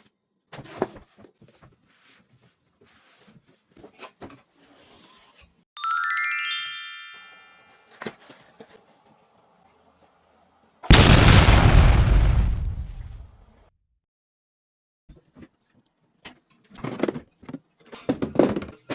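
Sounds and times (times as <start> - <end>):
rising electronic chime: 5.8 - 7.9.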